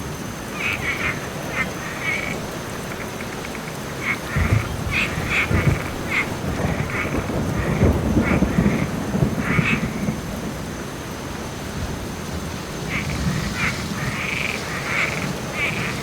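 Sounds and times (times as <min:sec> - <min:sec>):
steady rain: 0:00.0 - 0:16.0
animal croaking or quacking: 0:00.5 - 0:10.0, 0:12.9 - 0:16.0
low roll of thunder: 0:04.0 - 0:16.0.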